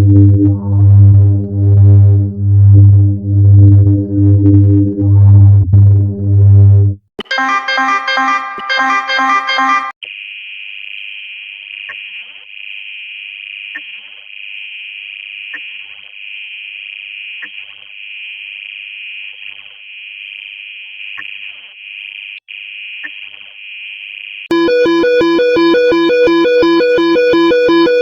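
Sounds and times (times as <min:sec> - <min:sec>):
high-pitched electronic alert tone: 0:24.5 - 0:28.0
loud electronic music: 0:24.5 - 0:28.0.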